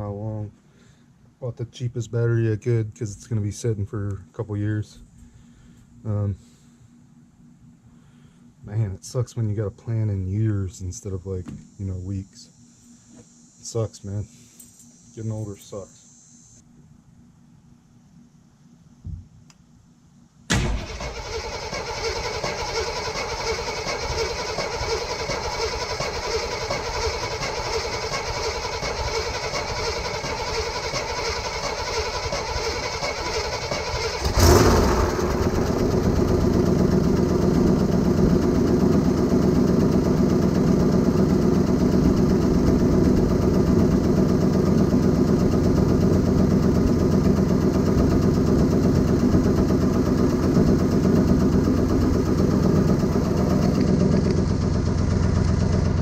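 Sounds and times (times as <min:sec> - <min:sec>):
starter cranking engine: 0:20.5 - 0:56.0
car engine idling: 0:20.7 - 0:56.0.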